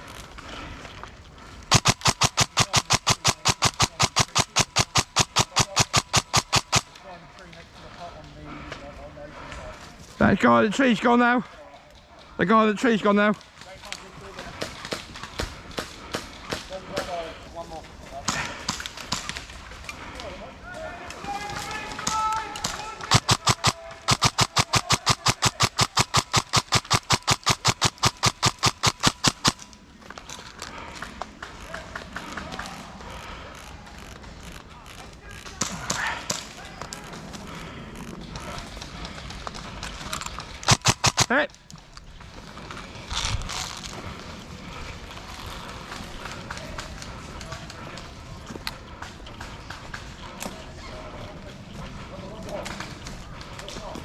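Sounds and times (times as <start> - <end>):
airsoft gun firing: 1.7 - 6.9, 22.0 - 29.6, 40.6 - 41.4.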